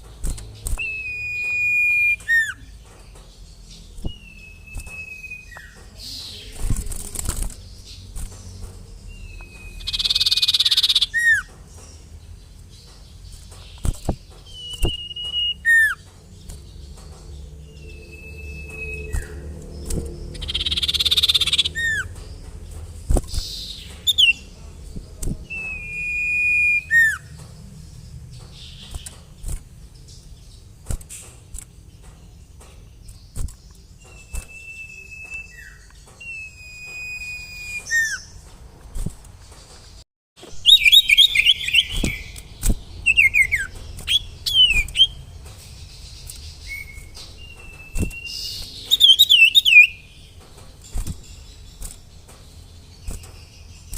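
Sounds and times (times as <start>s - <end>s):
songbird whistling: 0.7s - 2.8s, 3.9s - 6.6s, 9.1s - 11.5s, 13.8s - 16.6s, 17.6s - 22.2s, 25.4s - 27.3s, 34.0s - 38.4s, 40.5s - 45.2s, 46.6s - 50.2s
low hum: 13.8s - 30.3s.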